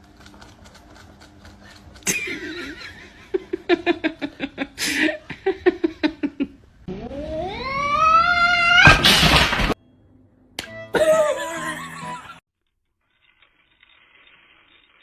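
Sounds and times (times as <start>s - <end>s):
person laughing: 2.0s - 6.6s, 10.9s - 12.4s.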